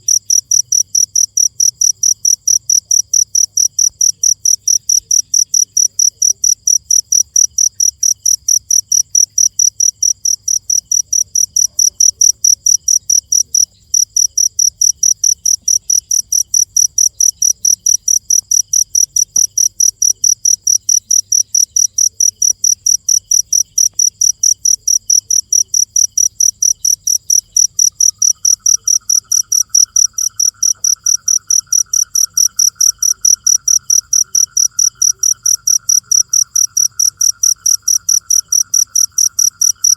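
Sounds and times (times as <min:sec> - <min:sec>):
cricket chirping: 0:00.0 - 0:39.9
low insect trill: 0:00.0 - 0:39.9.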